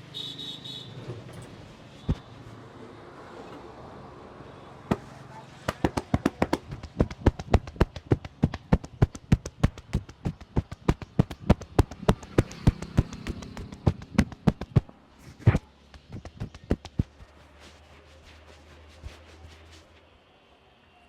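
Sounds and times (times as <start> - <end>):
hands slapping in massage: 4.9 - 17.3.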